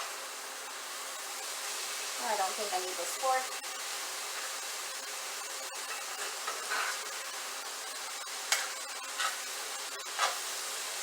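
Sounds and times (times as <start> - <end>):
chicken sizzling in a frying pan: 0.0 - 11.0
utensil scraping a pan: 5.9 - 7.1, 8.5 - 9.5, 10.1 - 10.5.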